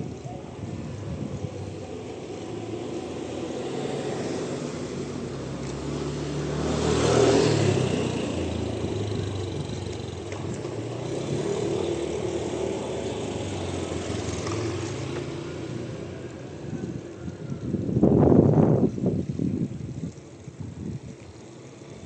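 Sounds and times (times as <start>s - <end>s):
vehicle engine passing: 1.0s - 17.9s.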